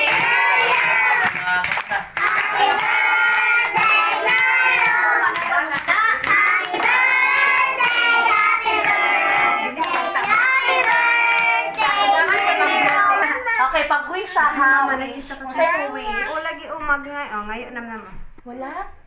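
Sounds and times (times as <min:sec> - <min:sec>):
children singing together: 0:00.0 - 0:01.4, 0:02.2 - 0:05.5, 0:06.2 - 0:13.6
children clapping: 0:00.0 - 0:13.4.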